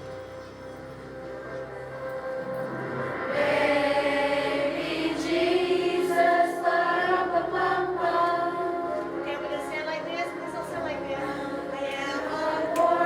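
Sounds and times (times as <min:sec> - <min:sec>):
held accompaniment: 0:00.0 - 0:13.0
choir singing: 0:02.2 - 0:13.0.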